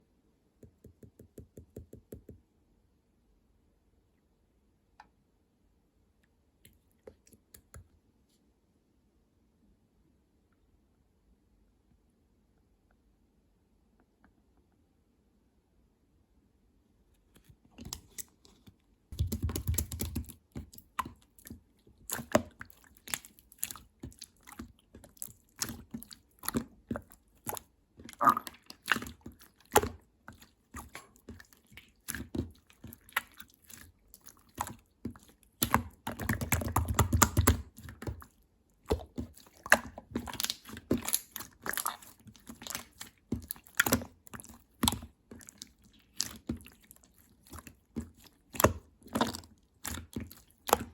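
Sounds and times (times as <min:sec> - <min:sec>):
slime squishing: 0:17.4 - 0:50.9.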